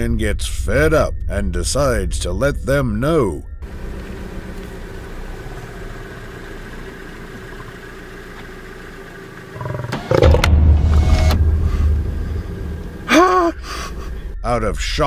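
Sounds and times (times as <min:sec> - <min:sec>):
car engine idling: 0:03.6 - 0:15.0
lion growling: 0:09.5 - 0:10.7.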